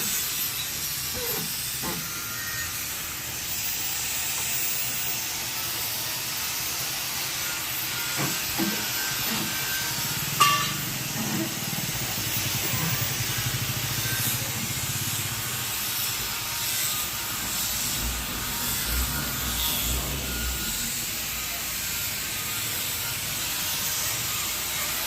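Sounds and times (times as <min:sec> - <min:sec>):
hissing machine noise: 0:00.0 - 0:25.0
low rumbling pulse: 0:17.1 - 0:21.8.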